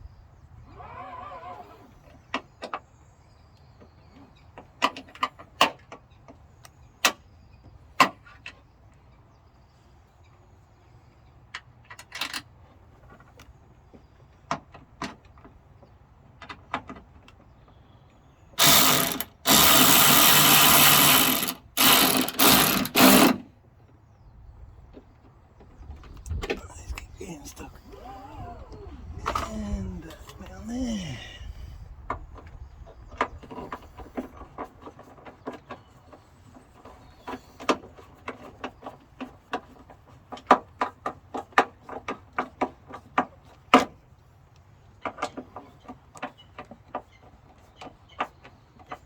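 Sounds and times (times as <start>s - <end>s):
power tool running: 18.6s - 23.4s.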